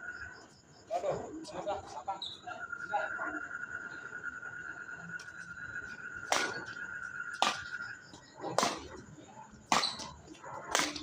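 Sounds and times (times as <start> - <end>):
high-pitched whine: 0.0 - 11.0
sharp slaps: 6.3 - 6.8, 7.4 - 7.8, 8.5 - 9.0, 9.7 - 10.1, 10.7 - 11.0.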